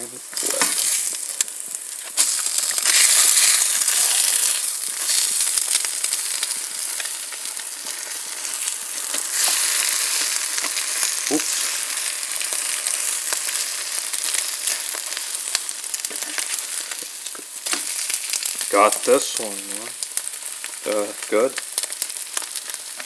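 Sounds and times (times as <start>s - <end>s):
food sizzling in a pan: 0.0s - 23.0s.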